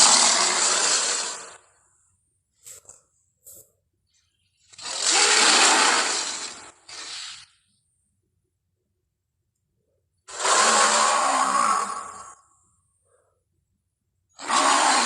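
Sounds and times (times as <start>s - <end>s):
person imitating creature growl: 10.3s - 12.4s, 14.4s - 15.0s.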